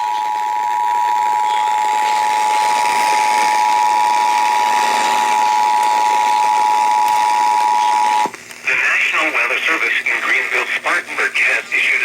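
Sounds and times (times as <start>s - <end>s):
two-tone attention signal: 0.0s - 8.3s
radio static hiss: 0.0s - 12.0s.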